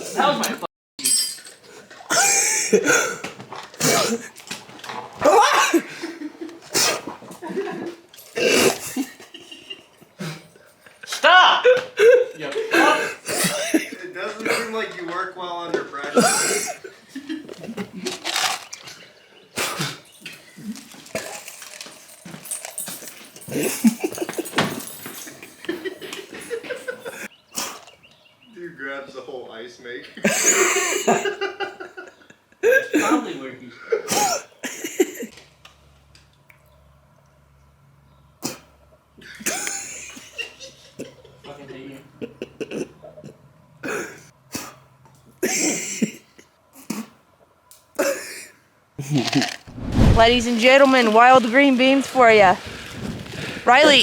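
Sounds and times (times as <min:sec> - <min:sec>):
rustling: 0:49.2 - 0:54.0.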